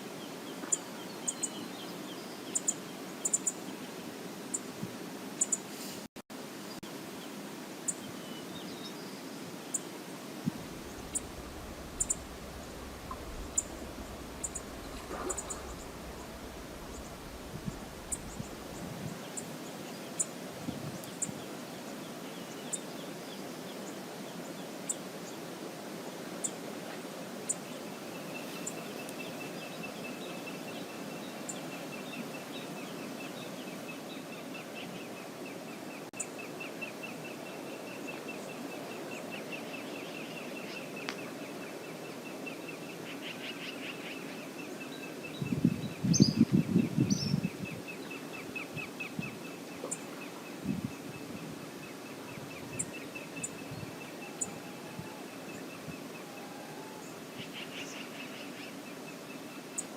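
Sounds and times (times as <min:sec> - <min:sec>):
river water flowing: 0:06.4 - 0:45.4
low buffeting rumble: 0:10.5 - 0:19.2
high-pitched pulsing trill: 0:10.7 - 0:18.8
short bird calls: 0:10.7 - 0:18.8.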